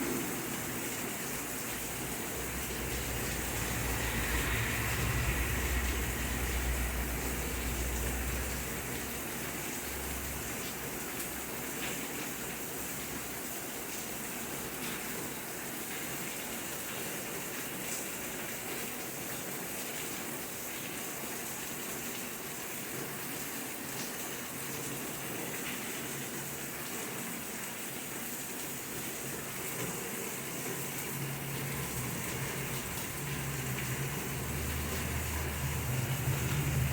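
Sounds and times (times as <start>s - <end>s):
steady rain falling: 0.0s - 36.9s
low rumble: 1.9s - 8.7s, 31.6s - 36.9s.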